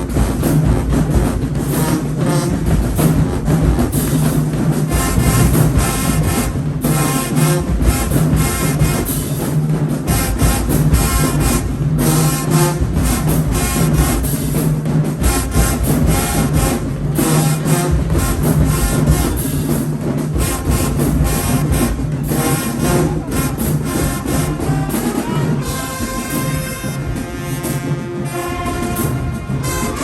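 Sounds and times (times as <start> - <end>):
brass section: 0.0 - 30.0
drumline beat: 0.0 - 30.0.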